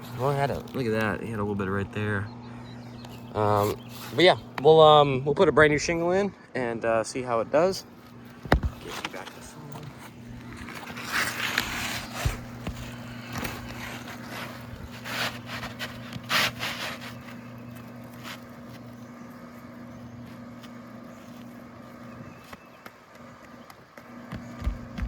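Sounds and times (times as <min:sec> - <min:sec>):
shingles scraping and rustling: 0:00.0 - 0:01.4, 0:08.1 - 0:19.0, 0:24.0 - 0:25.0
low mechanical hum: 0:00.0 - 0:25.0.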